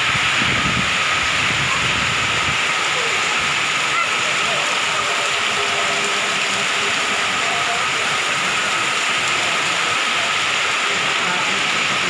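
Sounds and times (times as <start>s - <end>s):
strong wind rushing: 0.0s - 4.9s.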